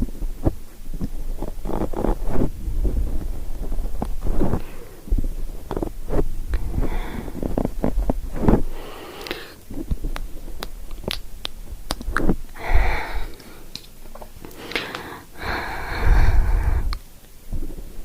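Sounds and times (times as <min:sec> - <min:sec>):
breathy rushes on microphone: 0:02.1 - 0:09.6, 0:14.6 - 0:17.0
wet mouth clicks and smacks: 0:09.2 - 0:12.6, 0:13.3 - 0:15.1.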